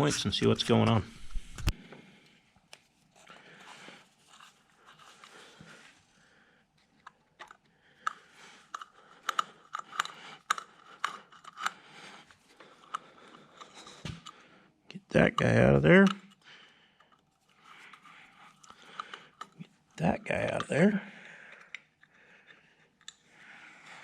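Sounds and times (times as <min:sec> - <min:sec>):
hand tools clicking and tapping: 0:07.0 - 0:14.4, 0:17.8 - 0:19.9, 0:20.5 - 0:23.3.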